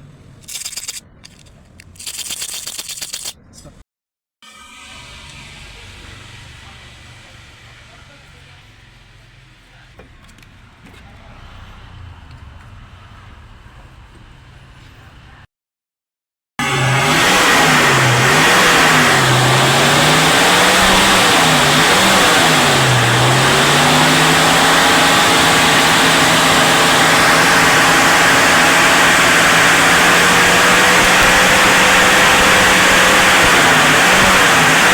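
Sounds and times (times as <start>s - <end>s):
car engine revving: 16.6s - 34.9s.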